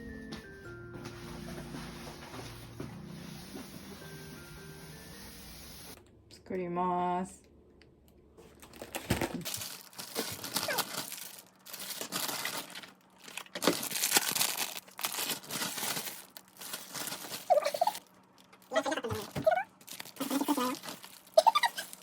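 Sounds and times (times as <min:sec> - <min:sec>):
packaging crinkling and rustling: 0:08.4 - 0:22.0.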